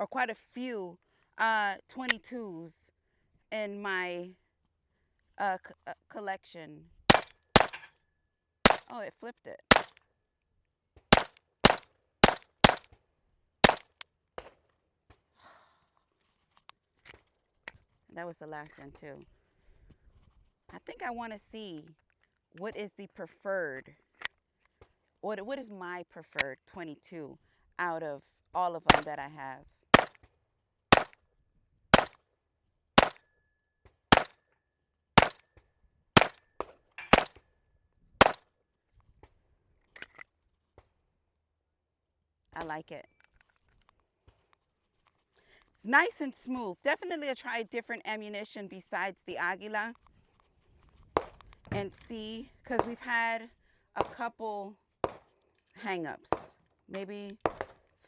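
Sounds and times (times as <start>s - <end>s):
pistol shots: 7.1s - 7.9s, 8.7s - 8.9s, 9.7s - 10.0s, 11.1s - 12.9s, 13.6s - 14.0s, 28.9s - 29.1s, 30.0s - 30.2s, 30.9s - 31.2s, 32.0s - 32.2s, 33.0s - 33.2s, 34.1s - 34.4s, 35.2s - 35.4s, 36.2s - 36.4s, 37.0s - 37.4s.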